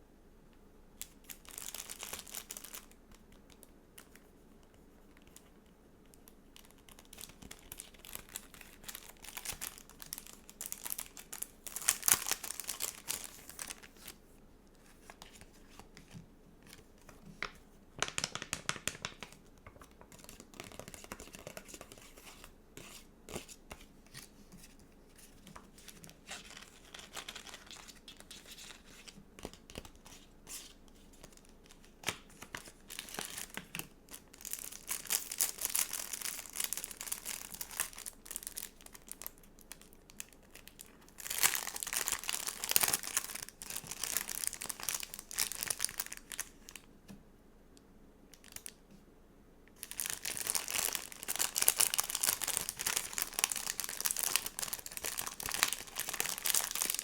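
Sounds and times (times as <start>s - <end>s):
stickers crinkling and tearing: 6.2s - 14.1s, 25.4s - 46.8s, 49.8s - 57.0s.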